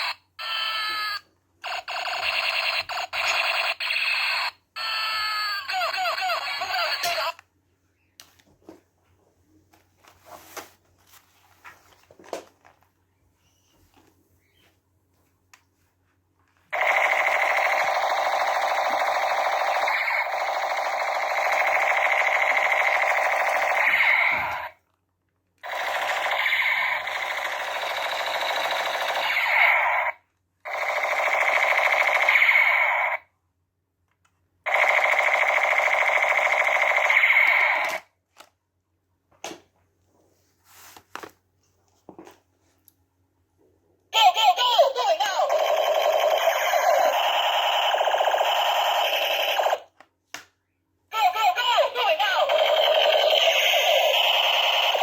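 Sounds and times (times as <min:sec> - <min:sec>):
buzzing toy gun sound effect: 0:00.0 - 0:07.4, 0:16.8 - 0:24.8, 0:25.6 - 0:33.3, 0:34.7 - 0:38.1, 0:44.2 - 0:49.9, 0:51.2 - 0:55.0.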